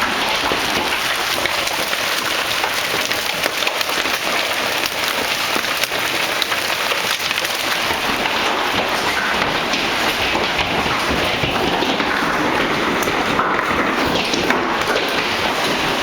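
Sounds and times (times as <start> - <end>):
hailstones clattering: 0.0 - 16.0.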